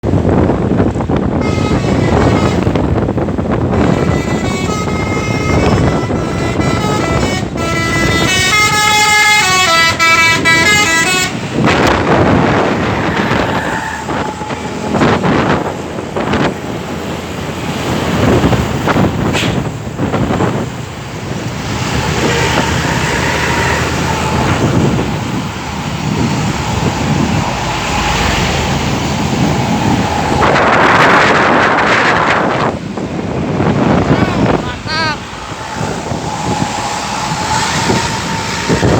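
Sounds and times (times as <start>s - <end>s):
road traffic noise: 0.0s - 38.9s
multi-tone bus air horn melody: 1.3s - 12.0s, 12.8s - 15.6s, 21.6s - 25.0s, 33.8s - 38.9s.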